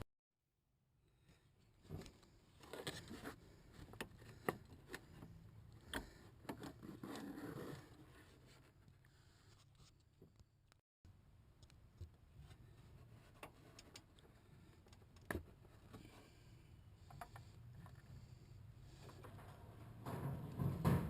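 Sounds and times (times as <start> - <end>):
handling clicks and scrapes: 1.8 - 10.5.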